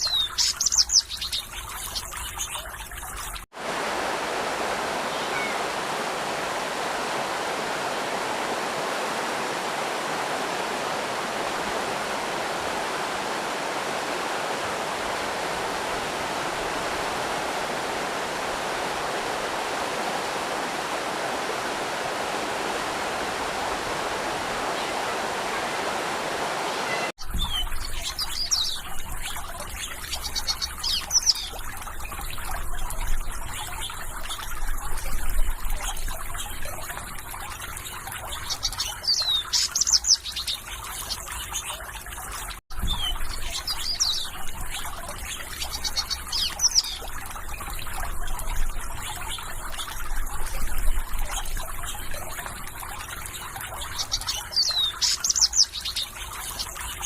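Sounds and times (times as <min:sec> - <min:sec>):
birds chirping: 0:00.0 - 0:02.7, 0:04.8 - 0:34.6, 0:42.8 - 0:57.0
stream water rushing: 0:03.5 - 0:27.2.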